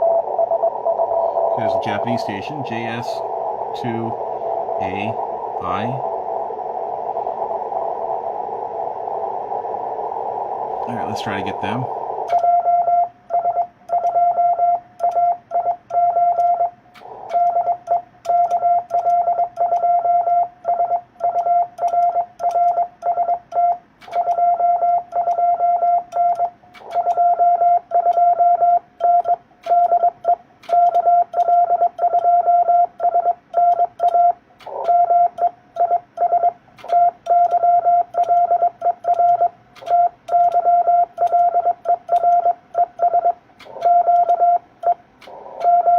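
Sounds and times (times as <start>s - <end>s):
morse code tone: 12.3s - 45.9s.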